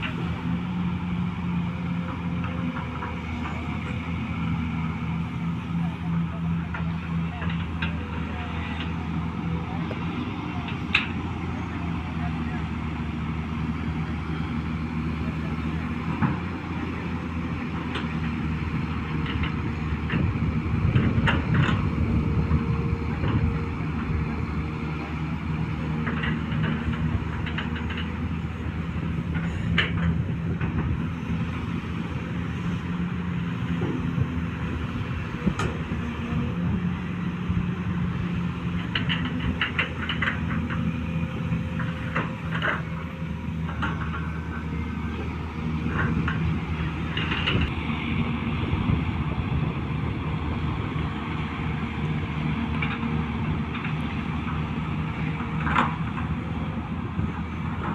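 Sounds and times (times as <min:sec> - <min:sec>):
excavator diesel engine running: 0:00.0 - 0:57.9
metallic clanks and rattles: 0:19.1 - 0:22.1, 0:26.0 - 0:28.5, 0:38.7 - 0:44.7, 0:45.8 - 0:47.8.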